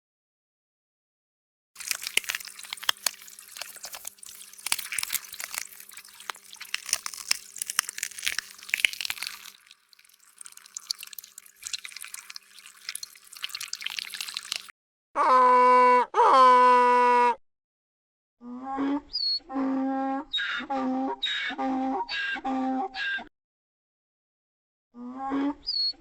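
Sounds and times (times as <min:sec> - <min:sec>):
water splashing and dripping: 0:01.8 - 0:14.7.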